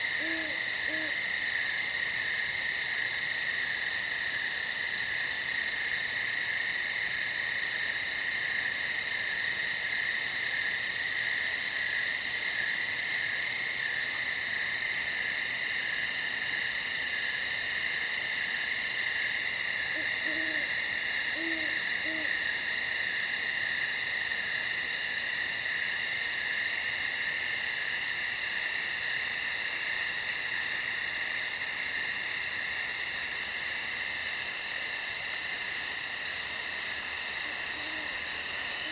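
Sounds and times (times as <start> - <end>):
insect chorus chirring: 0.0 - 38.9
owl hooting: 0.2 - 1.2, 20.0 - 20.7, 21.4 - 22.4, 37.4 - 38.1.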